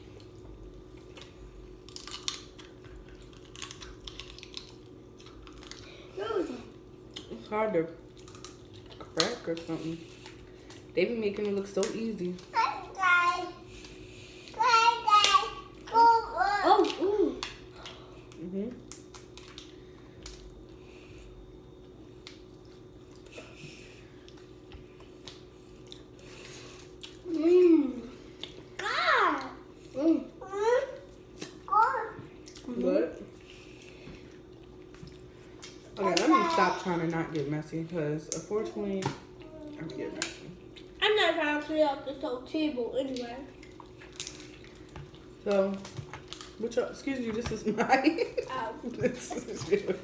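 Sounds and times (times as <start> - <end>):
wet chewing and squishing: 0.0 - 6.1, 6.7 - 7.4, 8.0 - 12.6, 16.8 - 20.8, 24.1 - 27.4, 28.2 - 30.0, 31.0 - 37.4, 38.3 - 41.0, 43.0 - 46.7
crab shells cracking: 1.8 - 5.9, 8.1 - 9.4.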